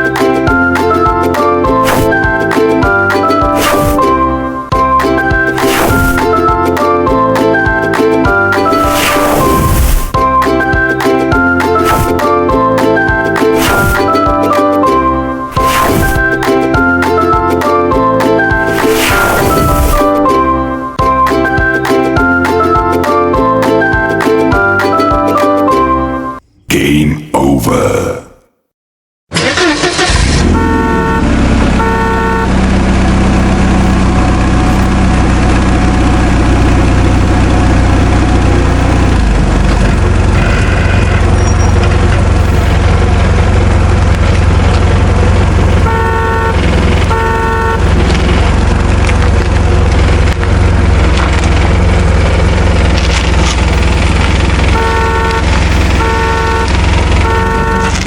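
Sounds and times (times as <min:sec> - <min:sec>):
vehicle engine rumbling: 0:00.0 - 0:23.6, 0:29.4 - 0:58.0
horn honking: 0:00.1 - 0:26.4, 0:29.4 - 0:37.0, 0:40.2 - 0:43.7, 0:45.4 - 0:48.6, 0:53.6 - 0:58.0.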